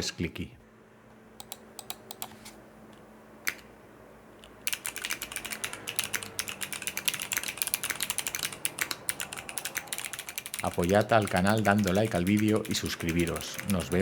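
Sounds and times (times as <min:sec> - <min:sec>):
typing on mechanical keyboard: 0:04.5 - 0:14.0.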